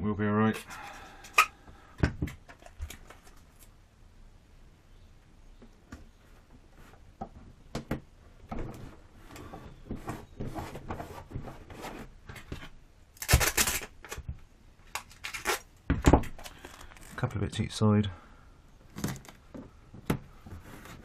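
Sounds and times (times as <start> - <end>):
tape handling clicks and rustles: 0.5 - 1.6, 2.2 - 3.7, 12.2 - 17.3, 18.9 - 20.2.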